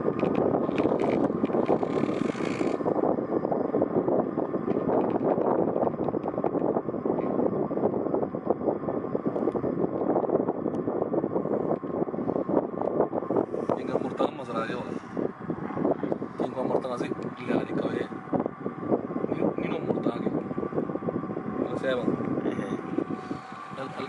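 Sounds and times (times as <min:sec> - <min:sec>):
wind buffeting microphone: 0:00.0 - 0:24.0.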